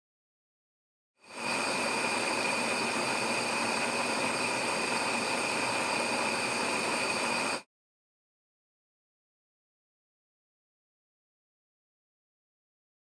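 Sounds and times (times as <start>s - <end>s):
thin high whine: 1.3s - 7.7s.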